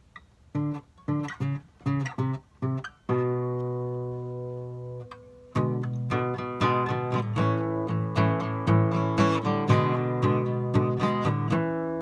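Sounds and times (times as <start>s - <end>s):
guitar strumming: 0.0s - 12.0s.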